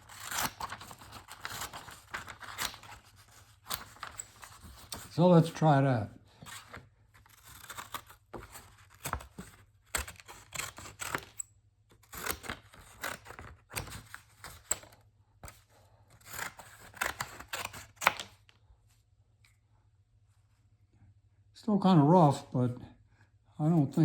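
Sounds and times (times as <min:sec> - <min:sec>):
scissors snipping paper: 0:00.0 - 0:05.1, 0:06.5 - 0:18.4.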